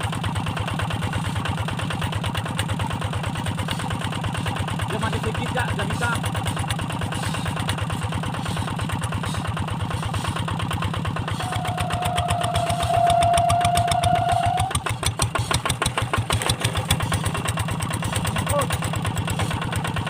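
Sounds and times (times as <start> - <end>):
diesel tractor engine running: 0.0 - 20.0
steady high tone: 11.3 - 14.7.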